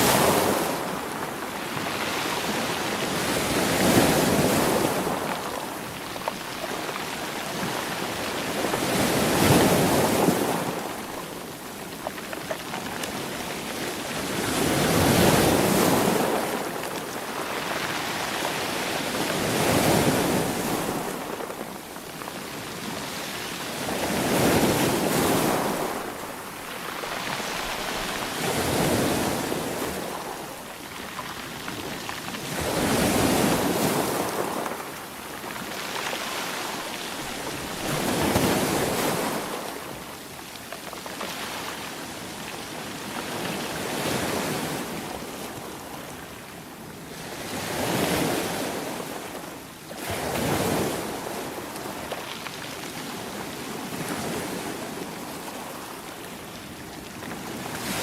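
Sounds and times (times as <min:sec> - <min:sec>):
hiss of surf: 0:00.0 - 0:11.6
sea waves washing in: 0:00.0 - 0:11.7, 0:13.6 - 0:40.5.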